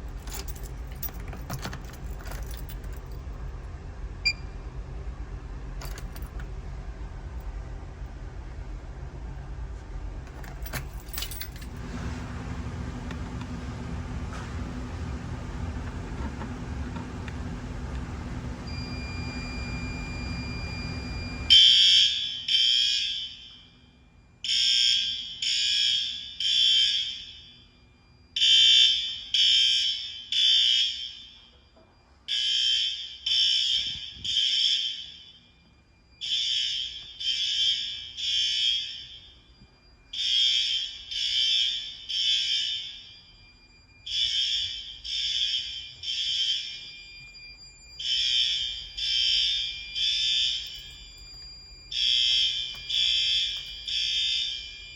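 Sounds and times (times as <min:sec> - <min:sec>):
fire alarm horns blasting: 0:00.0 - 0:15.8, 0:16.6 - 0:54.9
low rumbling noise: 0:00.0 - 0:18.7.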